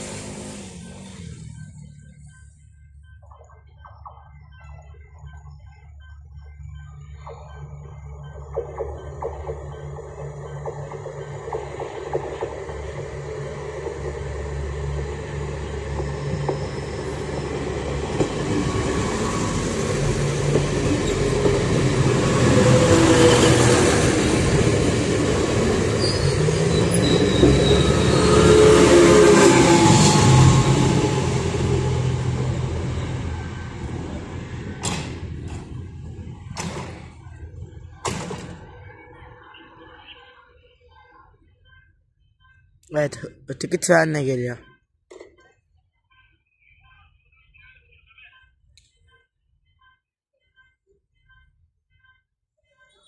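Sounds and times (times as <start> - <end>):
train engine drone and wheel rumble: 0.0 - 44.6.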